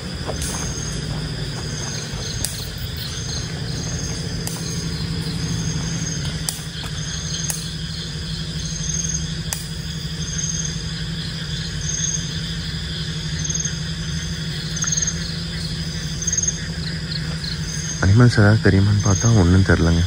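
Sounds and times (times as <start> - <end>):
crickets chirping: 0.0 - 20.0
insect trill: 0.0 - 20.0
low hum: 0.0 - 20.0
sharp clicks: 2.4 - 3.0, 4.4 - 5.0, 6.2 - 7.9, 9.4 - 9.8.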